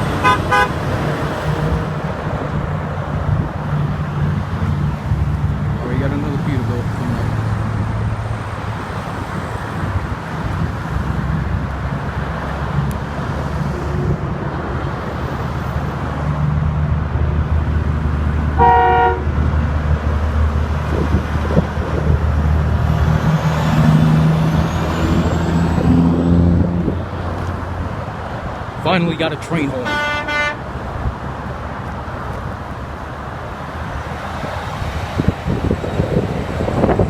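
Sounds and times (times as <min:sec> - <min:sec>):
diesel trucks passing: 0:00.0 - 0:37.0
highway traffic: 0:00.0 - 0:37.0
short horn toot: 0:18.6 - 0:19.3, 0:29.8 - 0:30.6.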